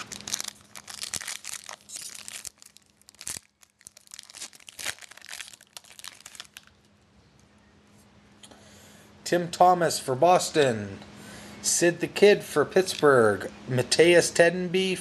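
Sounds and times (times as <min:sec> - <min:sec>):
plastic wrapper crinkling and tearing: 0:00.0 - 0:06.9.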